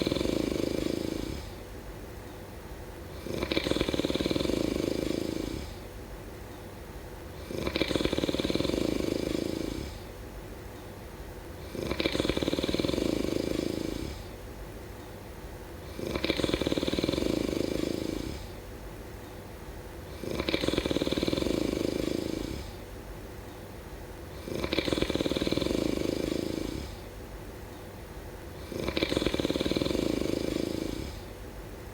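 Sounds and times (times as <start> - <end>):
person snoring: 0.0 - 1.6, 3.1 - 5.8, 7.4 - 10.1, 11.6 - 14.4, 15.8 - 18.5, 20.1 - 22.8, 24.3 - 27.1, 28.6 - 31.3.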